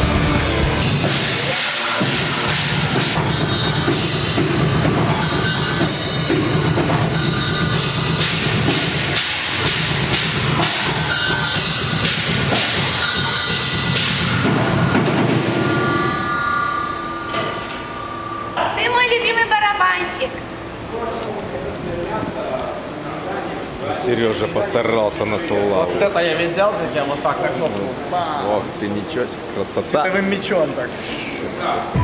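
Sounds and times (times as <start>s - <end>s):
heavy metal music: 0.0s - 17.4s.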